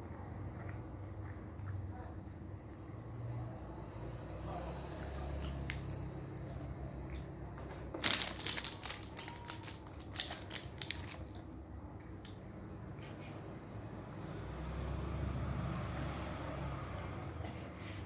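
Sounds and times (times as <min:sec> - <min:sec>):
crisp crunching and crackling: 0:07.9 - 0:11.5.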